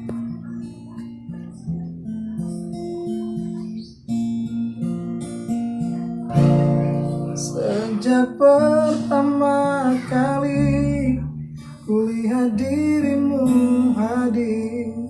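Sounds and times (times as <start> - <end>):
acoustic guitar strumming: 0.0 - 15.0
person singing: 6.3 - 15.0.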